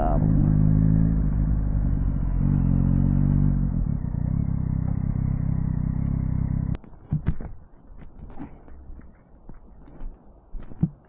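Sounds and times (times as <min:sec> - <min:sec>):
motorcycle engine running: 0:00.0 - 0:06.8.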